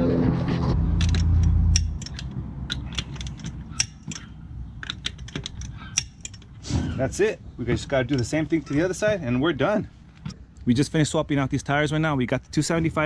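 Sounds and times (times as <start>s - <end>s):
hand tools clicking on lug nuts: 1.0s - 6.6s, 7.6s - 9.2s.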